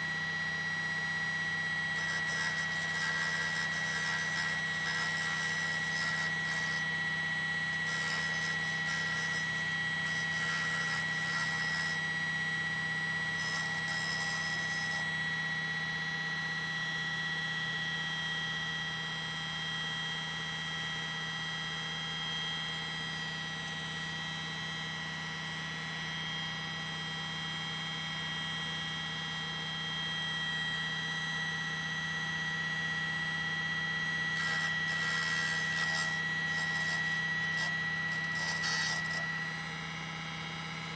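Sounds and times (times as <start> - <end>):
table saw whining: 0.0 - 40.9
saw grinding glass: 1.6 - 15.2, 33.7 - 39.6.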